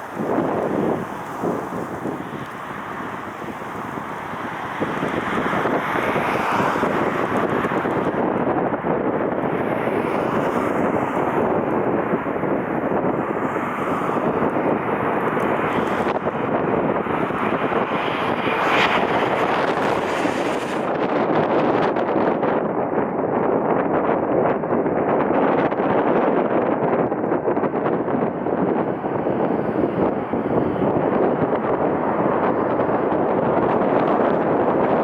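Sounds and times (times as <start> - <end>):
jet engines passing: 0.0 - 22.7
wind buffeting microphone: 0.0 - 35.0.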